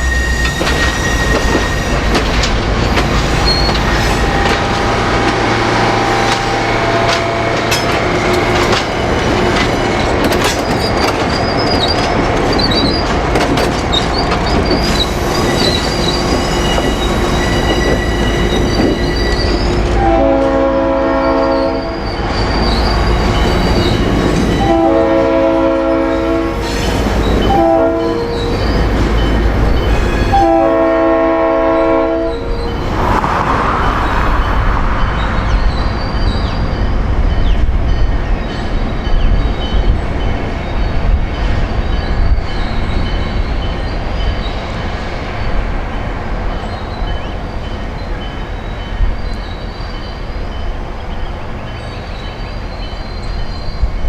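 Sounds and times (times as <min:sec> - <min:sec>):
wheels squealing on rail: 0:00.0 - 0:45.6
diesel locomotive rumbling: 0:00.0 - 0:54.0
wheels clicking over rail joints: 0:06.2 - 0:19.9
locomotive air horn: 0:17.6 - 0:22.0, 0:24.6 - 0:28.7, 0:30.1 - 0:32.6.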